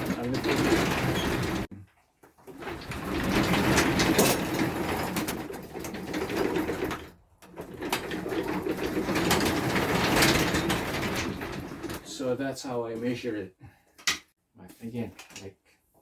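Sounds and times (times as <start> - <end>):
garage door rollers running on tracks: 0.0 - 1.7, 2.4 - 12.2.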